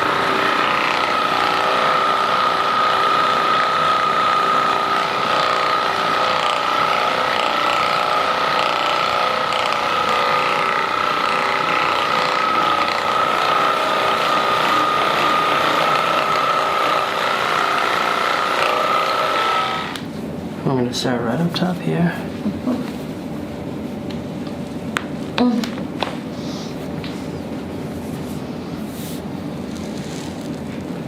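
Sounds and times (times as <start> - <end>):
massage gun motor whine and rattle: 0.0 - 20.2.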